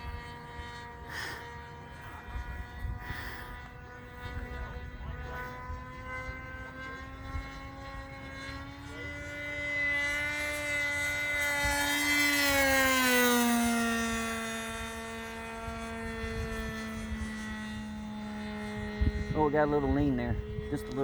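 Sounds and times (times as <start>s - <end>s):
model airplane engine buzzing: 0.0s - 21.0s.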